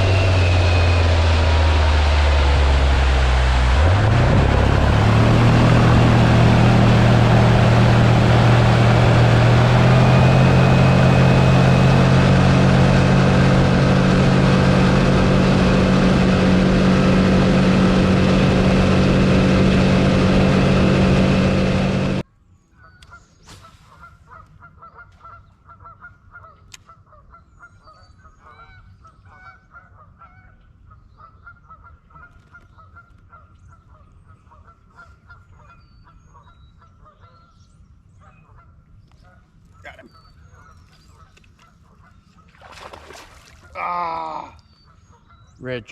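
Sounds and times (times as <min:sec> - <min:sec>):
outboard motor running: 0:00.0 - 0:22.2, 0:40.6 - 0:44.6
geese honking faintly: 0:23.6 - 0:42.6.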